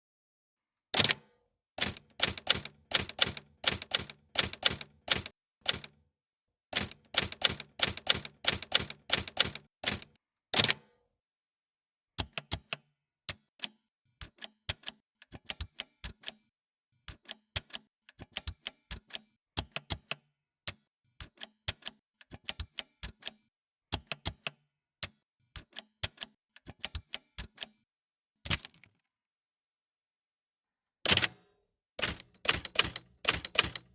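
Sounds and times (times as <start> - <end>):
manual typewriter keys striking: 1.8 - 5.9, 6.8 - 10.8, 31.1 - 31.4, 32.0 - 33.9.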